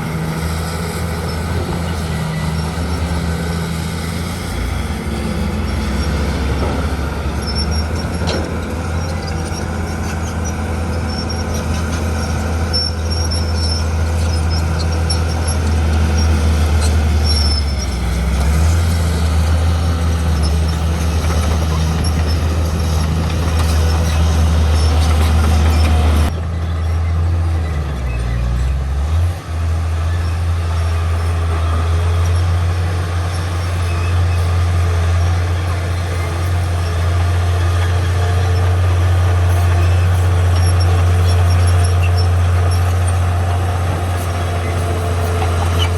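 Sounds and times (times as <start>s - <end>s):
heavy diesel machinery engine drone: 0.0s - 45.9s
high metallic squeaks: 5.2s - 27.1s, 39.6s - 45.9s.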